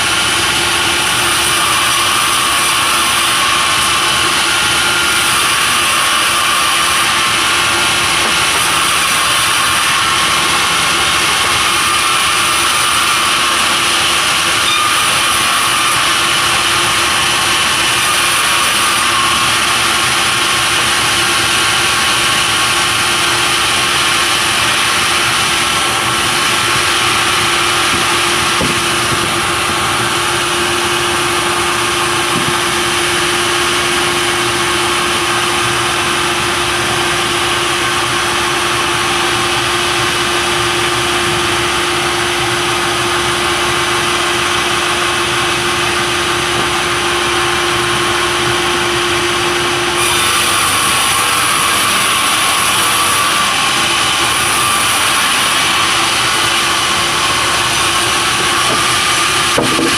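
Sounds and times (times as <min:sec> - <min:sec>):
sawmill machinery running: 0:00.0 - 0:59.9.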